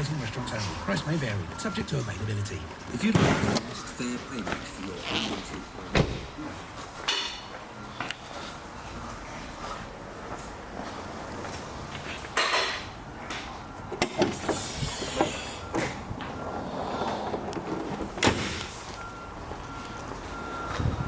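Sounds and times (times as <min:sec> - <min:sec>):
reversing alarm beeping: 0:00.0 - 0:05.9, 0:13.6 - 0:21.0
door clunks and clicks: 0:02.7 - 0:03.8, 0:05.5 - 0:06.4, 0:12.4 - 0:16.4, 0:17.0 - 0:18.8.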